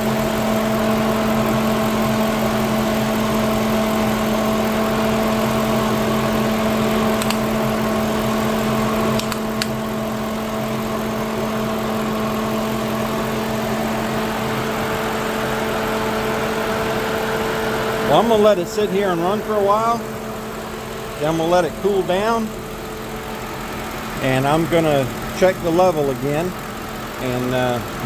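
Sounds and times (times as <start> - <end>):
car engine idling: 0.0 - 28.0
radiator fan humming: 0.0 - 28.0
light clicks: 7.2 - 7.4.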